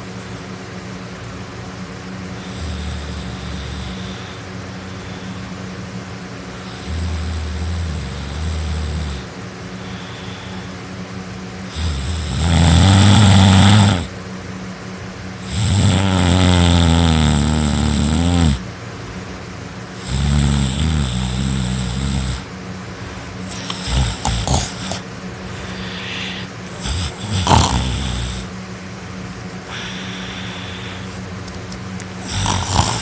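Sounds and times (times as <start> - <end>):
person snoring loudly: 2.4 - 5.6, 6.6 - 10.8, 11.7 - 14.1, 15.4 - 18.6, 20.0 - 22.5, 23.4 - 28.6, 29.7 - 31.2, 32.2 - 33.0.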